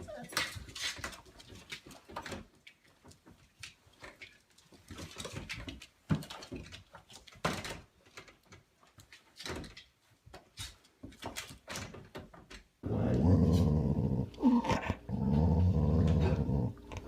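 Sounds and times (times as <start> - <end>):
dog sounds: 12.8 - 17.0.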